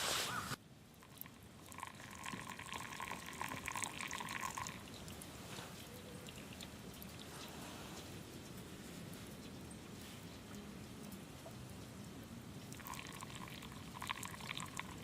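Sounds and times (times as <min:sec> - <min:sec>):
liquid being poured: 0:00.9 - 0:05.5, 0:12.7 - 0:15.0.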